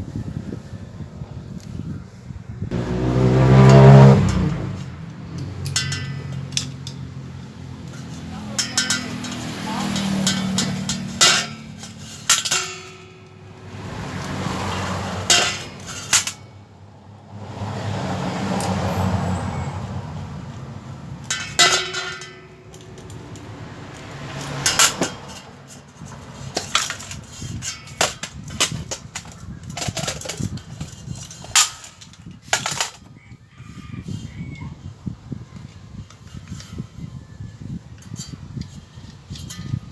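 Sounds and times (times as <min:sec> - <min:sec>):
metal parts clinking: 0:03.7 - 0:16.5, 0:21.2 - 0:33.1.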